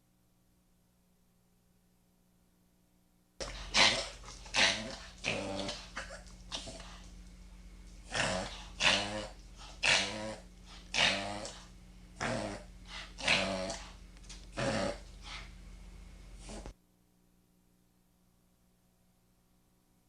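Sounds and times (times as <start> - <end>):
dog reverse sneezing: 3.4 - 7.0.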